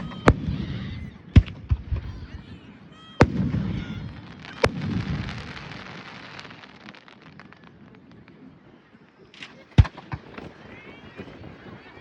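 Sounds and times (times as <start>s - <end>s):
firework crackles: 0.0s - 12.0s
firework bangs: 3.2s - 8.4s, 9.4s - 12.0s.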